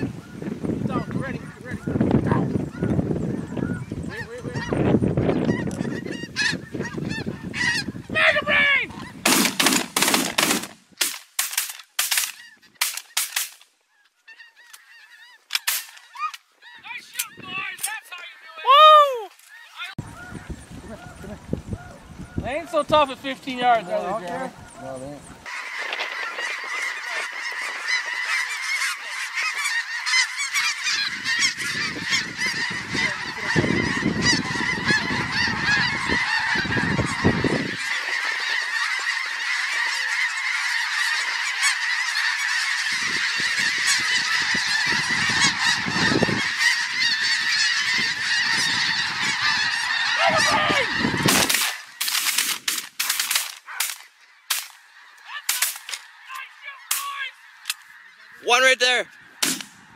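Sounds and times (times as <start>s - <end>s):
wind rumble on microphone: 0.0s - 9.3s, 20.0s - 23.3s, 31.0s - 37.8s, 42.9s - 51.6s
flock of geese honking: 0.0s - 11.1s, 12.0s - 59.9s.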